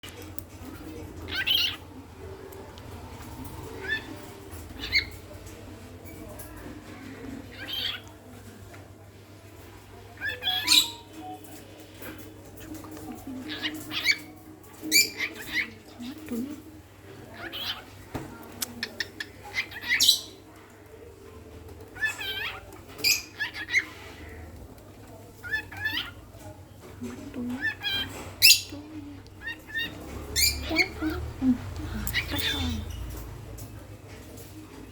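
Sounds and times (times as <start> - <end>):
pet bird calling: 1.3 - 1.8, 10.2 - 11.4, 18.7 - 20.4, 27.5 - 28.8, 29.4 - 33.0
bird chirps and squawks: 1.3 - 1.9, 3.8 - 5.2, 7.5 - 8.1, 10.2 - 11.4, 13.4 - 15.8, 17.3 - 17.9, 18.8 - 20.4, 22.0 - 24.4, 25.4 - 26.2, 27.6 - 28.8, 29.4 - 33.2.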